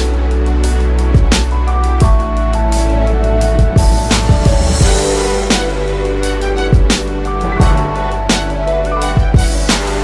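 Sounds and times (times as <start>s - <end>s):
instrumental background music: 0.0s - 10.0s
drum hits: 7.4s - 8.6s.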